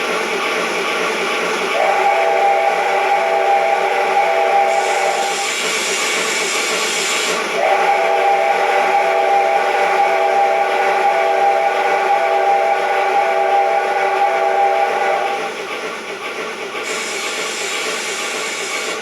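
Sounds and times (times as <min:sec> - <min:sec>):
steam hiss: 0:01.6 - 0:15.6, 0:16.8 - 0:19.0
chord steam whistle blast: 0:01.8 - 0:15.5.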